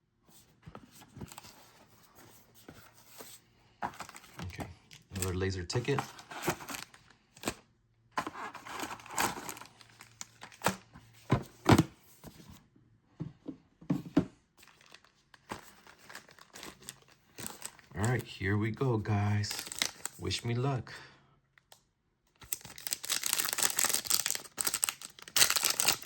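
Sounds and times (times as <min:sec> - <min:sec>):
wrapper being torn and crinkled: 0:19.5 - 0:20.2, 0:22.4 - 0:26.0.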